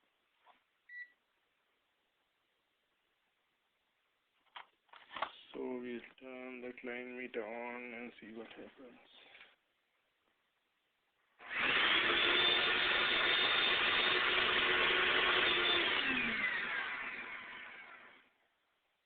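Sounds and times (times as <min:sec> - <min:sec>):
vacuum cleaner motor whining: 0:11.4 - 0:18.2.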